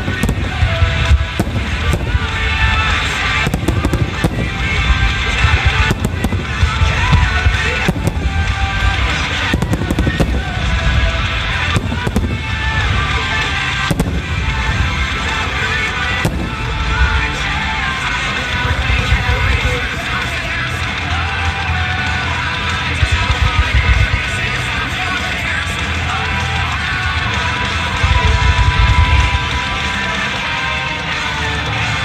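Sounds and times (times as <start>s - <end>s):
fireworks bursting: 0.0s - 32.0s
loud music: 0.0s - 32.0s.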